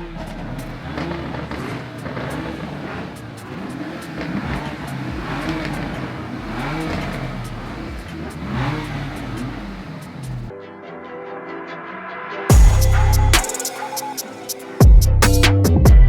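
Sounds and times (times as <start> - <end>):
car engines revving: 0.0 - 10.6.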